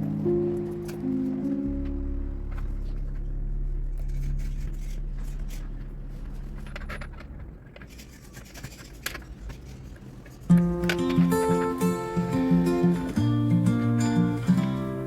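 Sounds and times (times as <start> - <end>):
low held musical tone: 0.0 - 7.8, 10.5 - 15.0
small tools clicking and scraping: 6.7 - 11.2.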